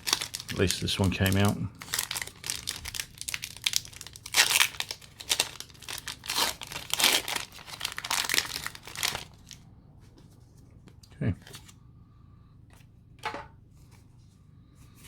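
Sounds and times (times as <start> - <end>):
foil wrapper crinkling and tearing: 0.0 - 9.6.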